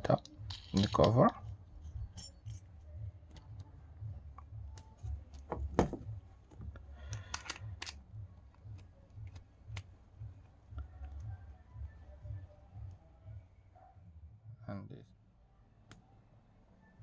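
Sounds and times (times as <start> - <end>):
small plastic parts clicking: 7.1 - 8.0.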